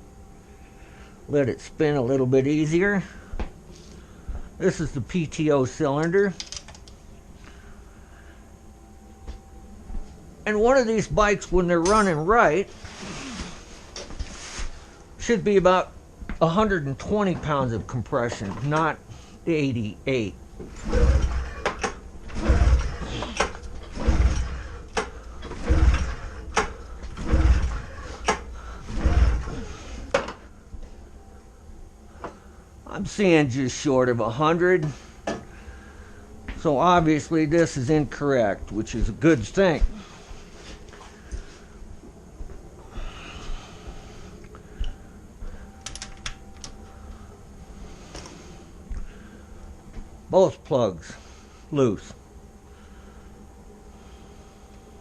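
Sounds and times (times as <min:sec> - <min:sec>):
engine cranking over: 0:20.6 - 0:30.3.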